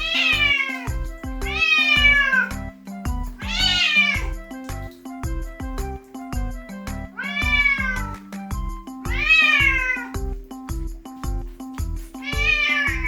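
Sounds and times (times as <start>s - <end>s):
kitten meowing: 0.0s - 2.7s, 3.4s - 4.4s, 7.2s - 8.3s, 9.1s - 10.2s, 12.2s - 13.0s
background music with steady beat: 0.0s - 13.0s.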